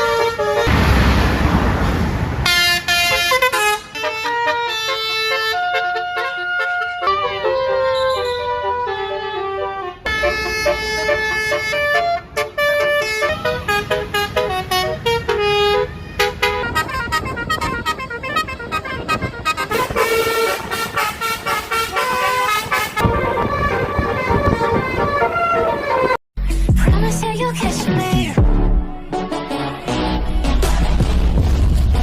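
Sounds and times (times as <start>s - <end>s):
multi-tone bus horn melody: 0.0s - 0.8s, 2.4s - 26.2s.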